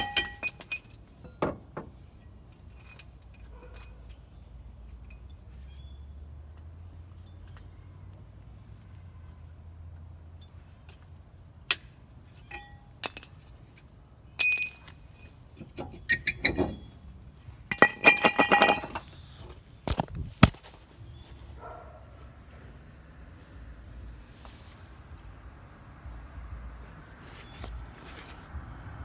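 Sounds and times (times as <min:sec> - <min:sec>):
hard objects clinking: 0:00.0 - 0:01.4, 0:17.7 - 0:19.2.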